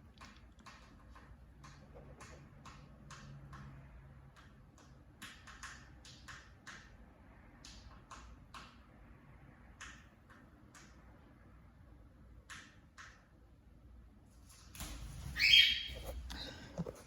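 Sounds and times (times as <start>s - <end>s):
beak tapping against a fan: 0.1s - 9.0s, 9.7s - 11.2s, 12.4s - 13.4s.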